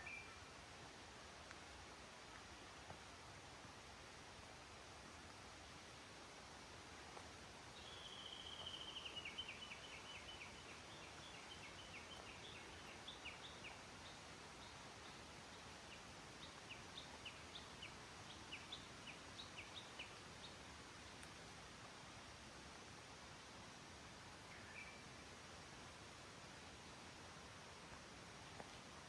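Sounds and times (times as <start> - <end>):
faint steady hiss: 0.0 - 29.0
bird chirps: 7.8 - 13.8.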